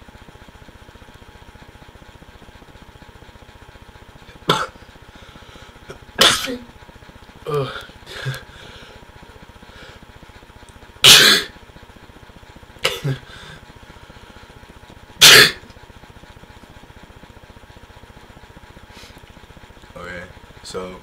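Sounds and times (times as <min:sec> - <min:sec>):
man sneezing: 0:06.2 - 0:06.6, 0:11.0 - 0:11.5, 0:12.8 - 0:13.3, 0:15.2 - 0:15.6.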